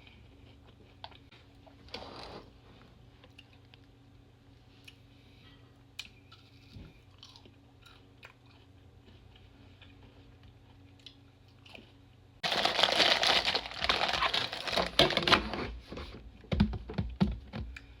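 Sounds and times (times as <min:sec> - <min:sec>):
loud crunching of chips: 0:12.4 - 0:15.5.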